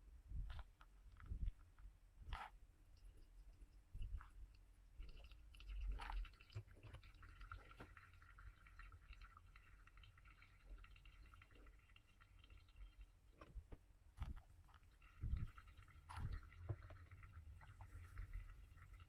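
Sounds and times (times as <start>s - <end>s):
water trickling: 4.0s - 19.0s.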